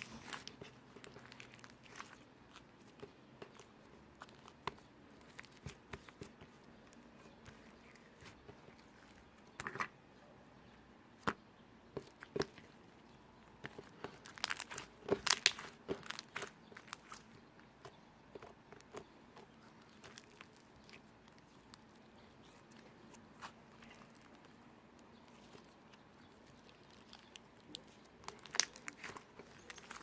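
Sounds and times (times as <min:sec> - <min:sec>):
hands squishing slime: 0:00.0 - 0:00.5, 0:25.3 - 0:30.0.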